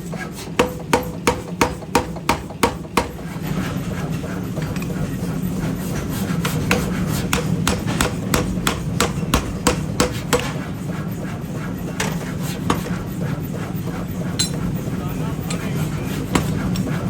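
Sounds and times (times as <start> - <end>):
steady machine hum: 0.0 - 17.0
hammer striking metal: 0.6 - 3.2, 6.7 - 10.6, 14.4 - 14.7.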